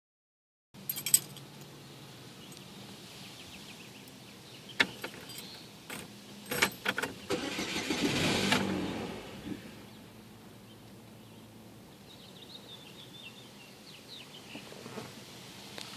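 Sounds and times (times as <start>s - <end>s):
keys jangling: 0.9s - 1.4s, 5.1s - 6.9s
car starter cranking: 6.5s - 9.7s.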